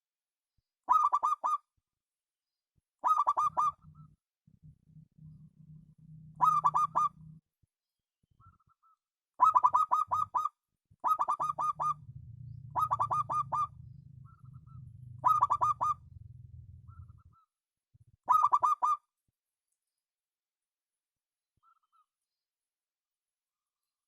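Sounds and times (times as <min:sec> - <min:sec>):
dove cooing: 0:00.9 - 0:01.6, 0:03.0 - 0:04.1, 0:05.2 - 0:07.4, 0:09.4 - 0:17.4, 0:18.3 - 0:19.0
low hum: 0:03.7 - 0:07.4, 0:11.5 - 0:17.2.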